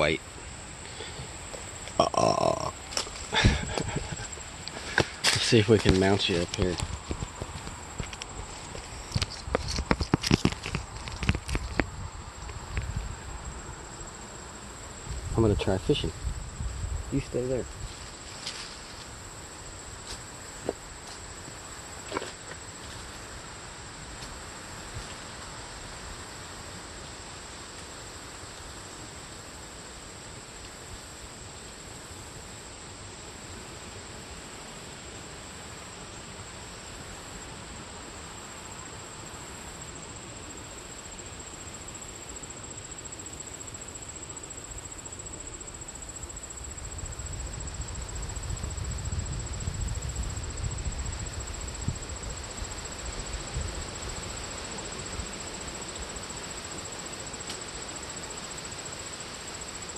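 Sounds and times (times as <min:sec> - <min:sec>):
faint outdoor hiss: 0:00.0 - 0:59.9
insects trilling: 0:00.0 - 0:59.9.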